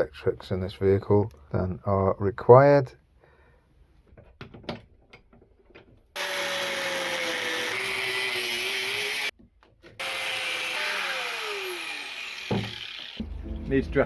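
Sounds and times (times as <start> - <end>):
power tool cutting metal: 6.2 - 9.3, 10.0 - 13.2.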